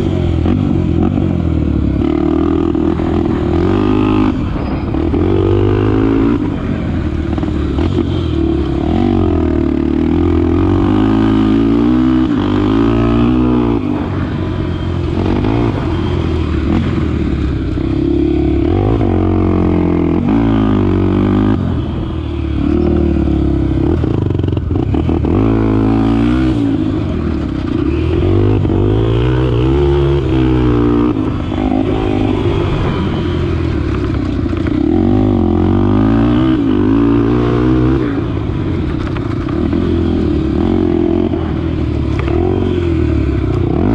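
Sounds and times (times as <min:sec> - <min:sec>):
motorcycle engine revving: 0:00.0 - 0:43.9.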